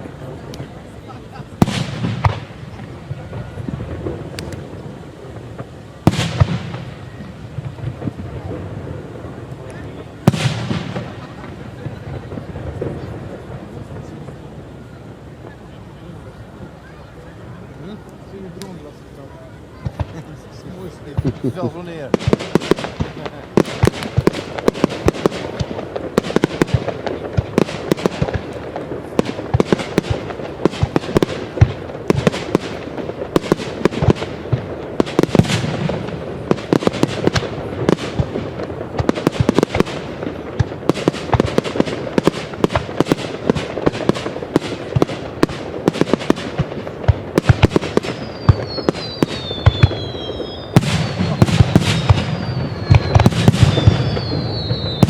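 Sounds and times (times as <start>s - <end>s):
fireworks bangs and crackling: 0.0s - 55.0s
falling firework whistles: 39.0s - 55.0s.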